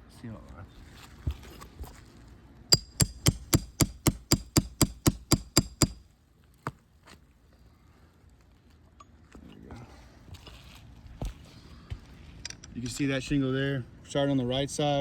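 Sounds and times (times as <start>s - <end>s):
hammer tapping metal nail puller: 2.8s - 6.0s.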